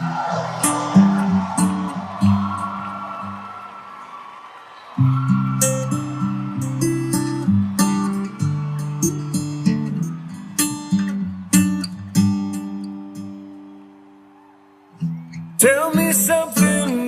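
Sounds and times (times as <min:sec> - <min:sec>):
acoustic guitar strumming chords: 0:05.1 - 0:14.0.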